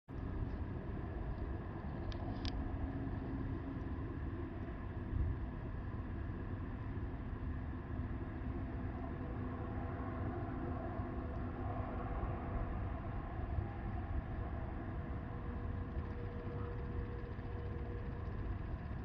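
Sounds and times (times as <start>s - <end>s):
wind on microphone rumbling: 9.0s - 19.0s
faint ticks: 15.8s - 19.0s.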